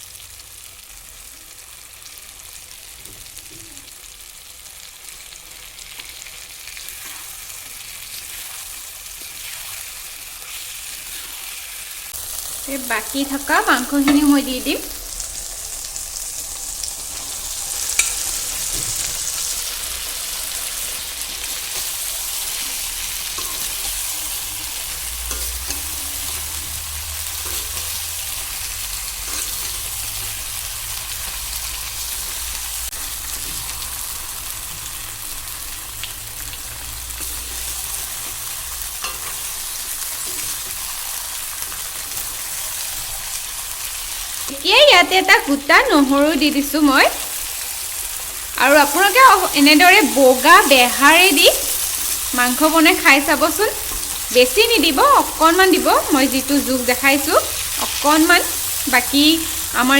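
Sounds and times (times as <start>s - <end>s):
chicken sizzling in oil: 0.0s - 59.9s.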